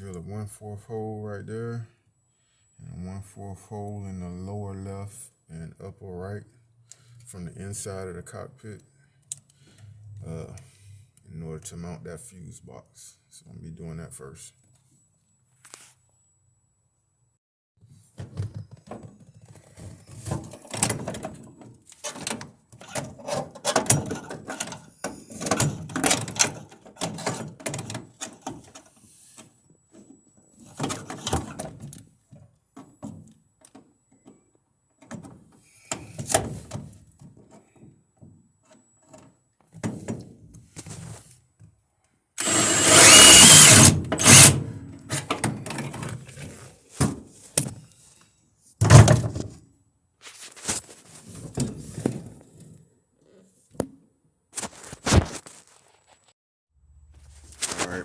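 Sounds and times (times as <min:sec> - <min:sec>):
power drill drilling through metal: 0:42.4 - 0:44.6.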